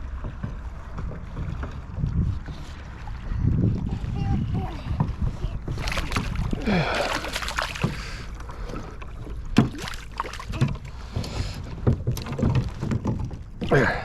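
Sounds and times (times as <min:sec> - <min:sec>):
water splashing: 0:05.6 - 0:11.2.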